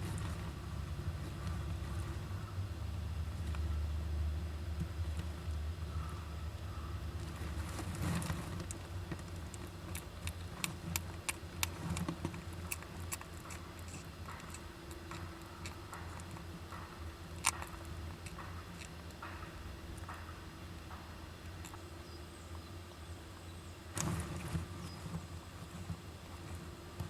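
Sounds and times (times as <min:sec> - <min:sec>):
steady low hum: 0:00.0 - 0:27.0
animal clicks and scratches: 0:07.2 - 0:21.9, 0:23.9 - 0:27.0.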